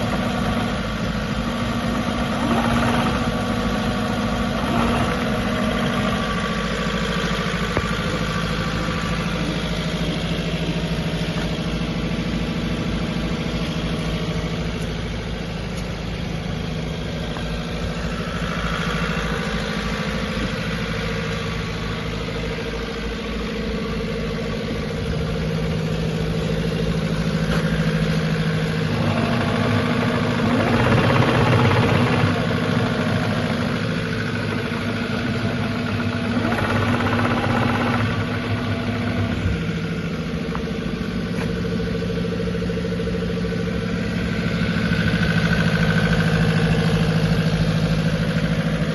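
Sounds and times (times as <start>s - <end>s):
excavator diesel engine idling: 0.0s - 48.9s.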